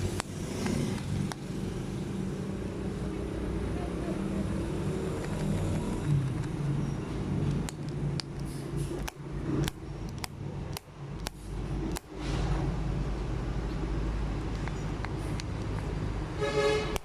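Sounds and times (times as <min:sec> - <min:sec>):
sharp clicks: 0:00.0 - 0:01.5, 0:05.0 - 0:06.6, 0:07.4 - 0:12.2, 0:14.5 - 0:15.9.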